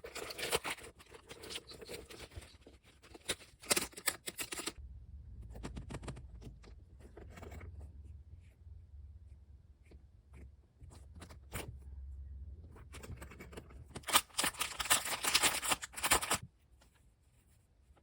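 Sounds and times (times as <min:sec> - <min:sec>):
paper and plastic rustling: 0:00.0 - 0:04.8, 0:13.0 - 0:17.6.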